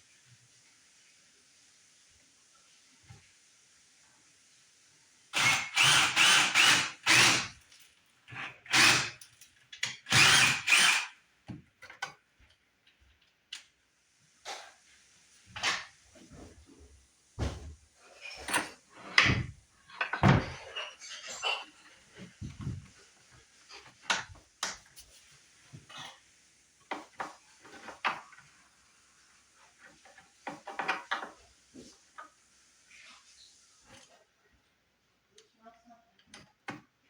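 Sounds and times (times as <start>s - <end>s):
power drill boring into wood: 5.3s - 7.6s, 8.6s - 9.2s, 10.1s - 11.2s.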